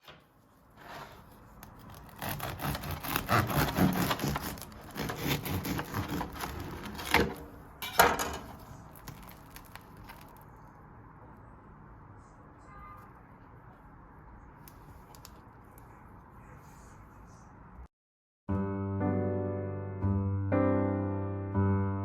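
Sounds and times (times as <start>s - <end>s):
bread knife sawing crusty loaf: 0.8s - 7.4s.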